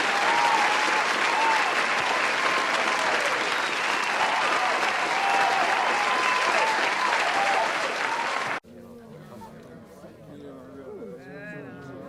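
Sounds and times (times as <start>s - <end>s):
crowd applauding: 0.0s - 8.6s
voices cheering: 0.0s - 8.6s.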